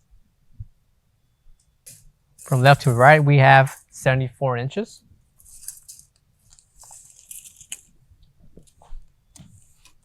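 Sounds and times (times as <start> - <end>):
rustling and scraping handling noise: 1.8 - 4.2, 4.9 - 10.0.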